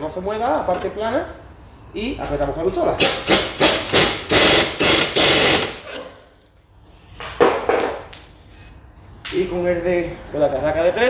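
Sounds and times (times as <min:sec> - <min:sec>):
impact wrench hammering: 0:03.0 - 0:06.1.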